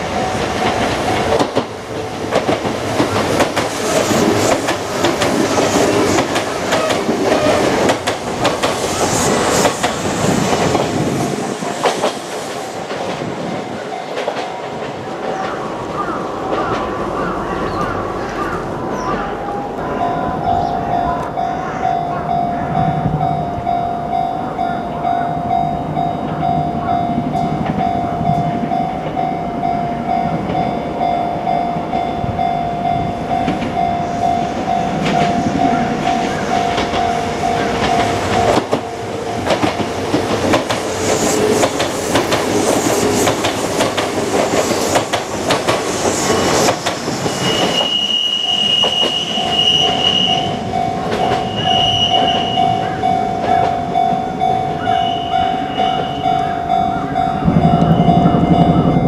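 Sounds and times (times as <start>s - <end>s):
level crossing warning bell: 0.0s - 1.4s, 13.4s - 15.8s, 16.9s - 40.2s, 47.5s - 59.0s
train wheels clattering on rail joints: 0.0s - 19.8s, 32.8s - 54.5s
higher electronic tone: 49.3s - 59.0s.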